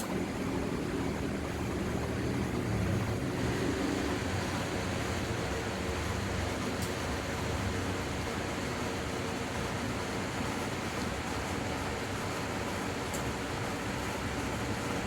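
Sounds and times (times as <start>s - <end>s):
ceiling fan running: 0.0s - 15.0s.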